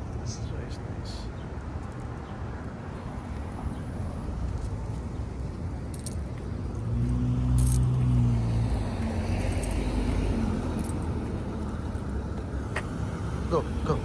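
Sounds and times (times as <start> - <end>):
light metallic jingles: 5.8 - 8.2, 9.0 - 11.3
car engine passing by: 6.7 - 14.0.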